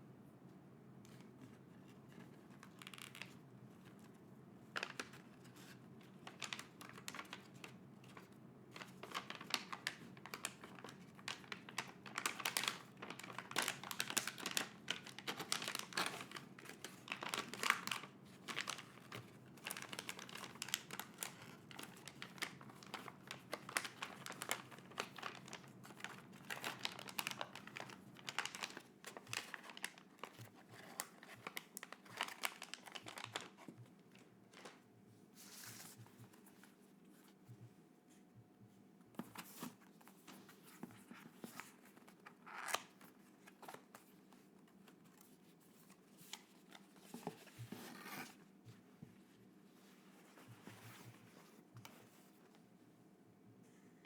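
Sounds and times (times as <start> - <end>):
packaging crinkling: 2.6 - 3.4, 4.8 - 34.8.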